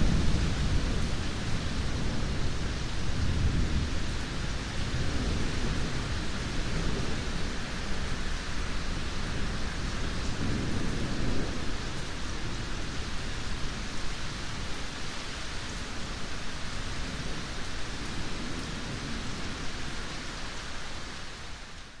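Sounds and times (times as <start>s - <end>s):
thunder rumbling: 0.0s - 8.1s
heavy rain: 0.0s - 22.0s.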